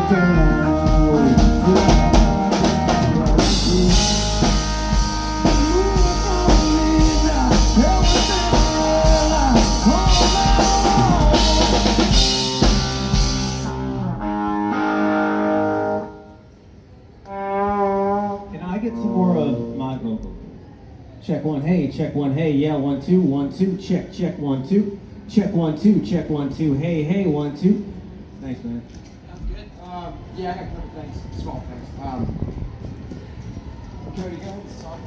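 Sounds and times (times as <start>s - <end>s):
drum kit: 0.0s - 14.0s
bass guitar: 0.0s - 16.1s
bending lead guitar: 0.0s - 16.3s.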